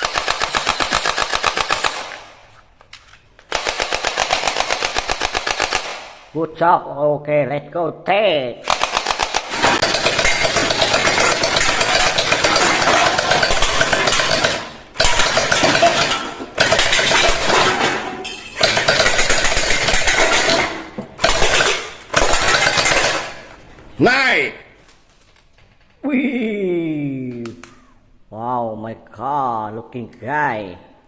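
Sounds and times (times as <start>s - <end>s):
toy machine gun rattle: 8.7s - 17.6s, 18.6s - 23.5s.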